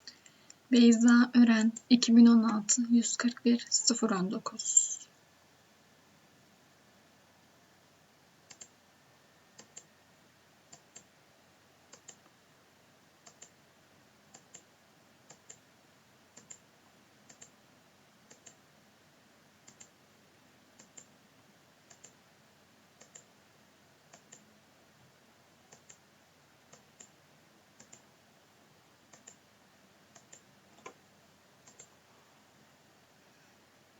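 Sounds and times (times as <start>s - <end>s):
computer mouse clicking: 8.4s - 8.8s, 9.6s - 9.9s, 10.7s - 11.1s, 11.9s - 12.3s, 13.2s - 13.6s, 14.3s - 14.7s, 15.3s - 15.6s, 16.4s - 17.6s, 18.3s - 18.6s, 19.6s - 20.0s, 20.8s - 21.1s, 21.8s - 22.2s, 23.0s - 23.3s, 24.1s - 24.5s, 25.7s - 26.1s, 26.7s - 27.2s, 27.8s - 28.1s, 29.1s - 29.4s, 30.1s - 31.0s, 31.6s - 31.9s.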